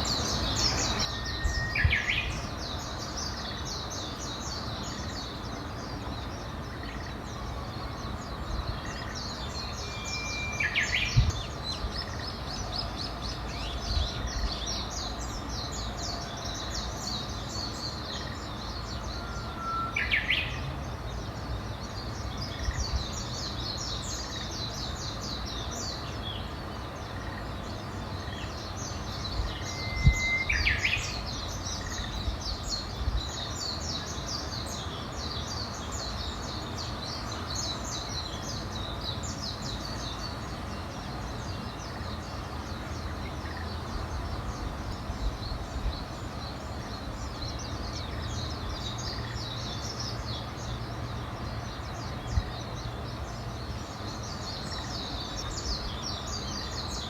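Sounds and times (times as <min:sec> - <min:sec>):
bird whistled song: 0:00.0 - 0:02.5, 0:09.4 - 0:11.6, 0:18.9 - 0:20.6, 0:29.2 - 0:31.3
chorus of high bird chirps: 0:00.0 - 0:20.8, 0:21.8 - 0:57.0.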